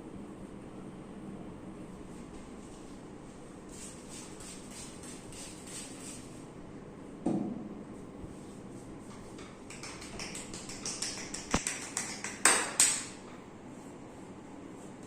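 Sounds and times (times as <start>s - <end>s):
hands slapping on skin: 9.4s - 13.2s.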